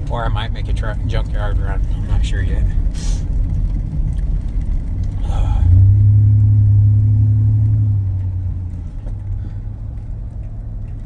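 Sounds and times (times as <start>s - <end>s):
truck engine droning from inside cab: 0.0s - 11.0s.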